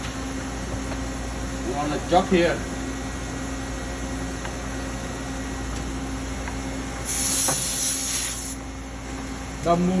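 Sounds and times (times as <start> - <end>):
sharp hiss of air: 7.0 - 8.6.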